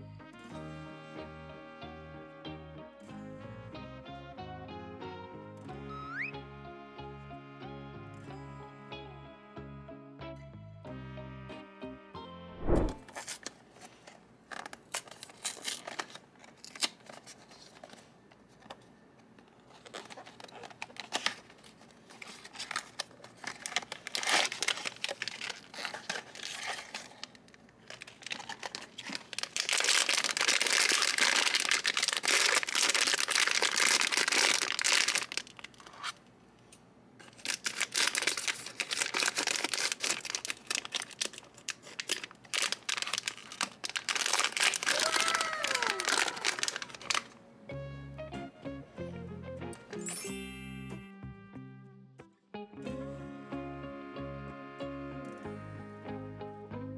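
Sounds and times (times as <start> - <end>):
packaging tearing: 12.6 - 13.6, 14.6 - 18.0, 19.7 - 36.2, 37.3 - 47.3
cardboard and plastic crinkling: 12.9 - 18.8, 19.6 - 36.2, 37.2 - 47.3
packaging clicks: 19.7 - 36.2, 37.3 - 47.3.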